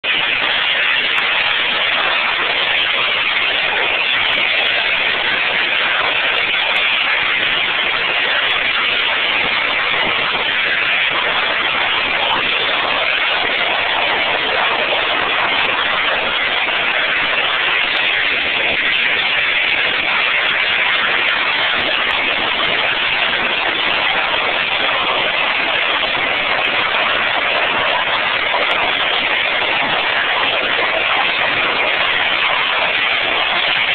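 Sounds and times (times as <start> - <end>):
electric arc furnace noise: 0.0 - 33.9.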